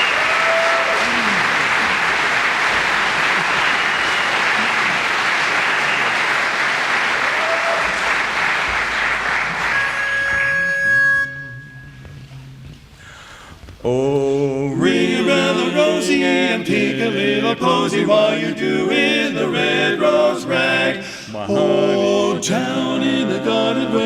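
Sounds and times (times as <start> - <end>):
audience applauding: 0.0 - 10.7.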